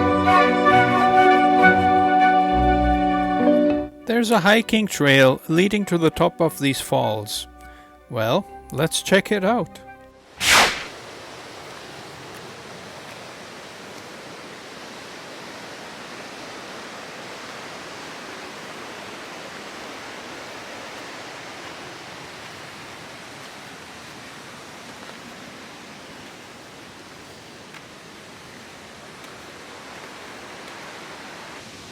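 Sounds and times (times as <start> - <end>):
waterfall rushing: 27.9 - 31.9.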